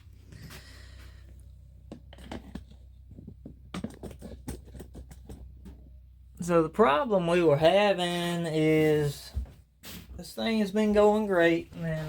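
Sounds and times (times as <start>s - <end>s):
steady low hum: 0.0s - 12.0s
faint handling clicks and knocks: 0.1s - 6.5s.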